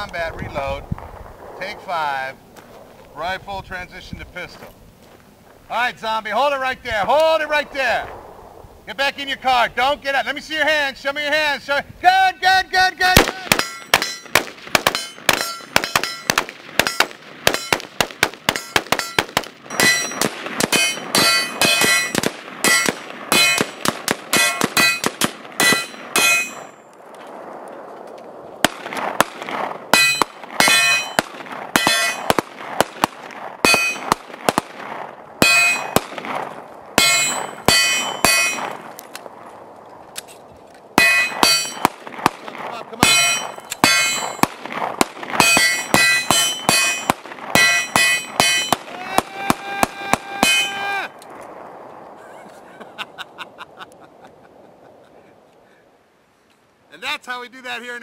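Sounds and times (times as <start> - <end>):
rapid gunshots: 13.1 - 26.6, 28.6 - 38.8, 41.0 - 50.6
steel targets clanging: 13.5 - 14.3, 14.9 - 17.8, 18.5 - 26.8, 30.0 - 31.2, 31.8 - 32.3, 33.7 - 34.1, 35.4 - 36.0, 37.0 - 38.8, 41.0 - 41.9, 43.0 - 44.5, 45.4 - 48.8, 50.4 - 50.8.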